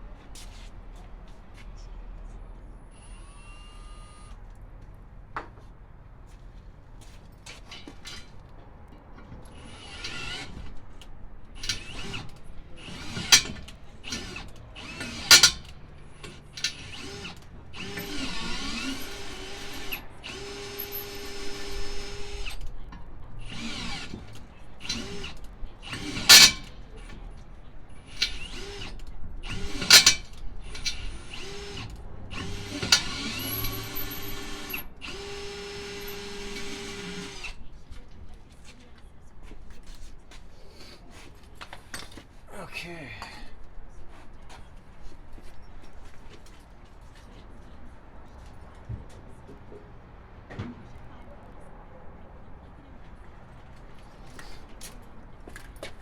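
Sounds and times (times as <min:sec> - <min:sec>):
power drill running: 0:09.6 - 0:10.7, 0:11.6 - 0:22.6, 0:23.5 - 0:26.7, 0:28.1 - 0:37.6
metal tools clanking: 0:13.0 - 0:14.3, 0:15.0 - 0:15.8, 0:25.9 - 0:26.7, 0:29.8 - 0:31.1.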